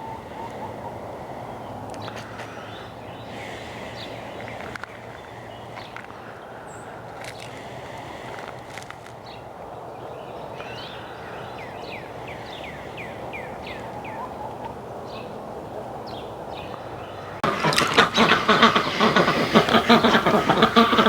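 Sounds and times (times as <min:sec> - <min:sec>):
outdoor background noise: 0:00.0 - 0:21.0
bird chirping: 0:16.1 - 0:21.0.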